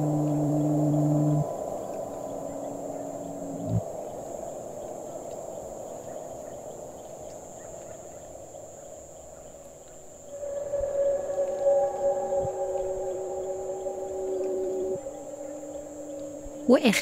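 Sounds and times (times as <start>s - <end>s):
thin high tone: 0.0s - 3.8s, 10.3s - 17.0s
low drone tones: 0.0s - 8.6s, 10.2s - 17.0s
low noisy haze: 0.0s - 17.0s.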